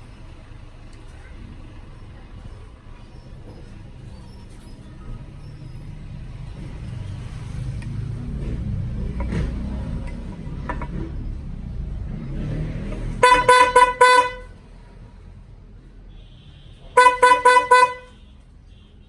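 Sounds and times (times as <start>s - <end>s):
car horn short toots: 13.1s - 14.6s, 16.1s - 19.0s.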